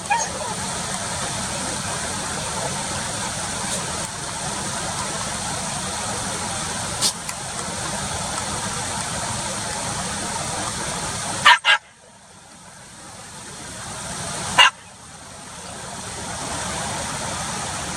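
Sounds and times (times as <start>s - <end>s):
dog barking: 0.0s - 0.6s, 11.4s - 11.9s, 14.6s - 14.8s
steady background noise: 0.0s - 17.9s.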